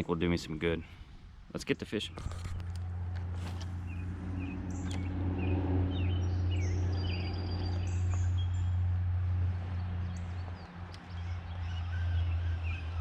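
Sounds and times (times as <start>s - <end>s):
steady low rumble: 0.0s - 13.0s
birds chirping and singing: 3.6s - 9.0s, 9.6s - 13.0s.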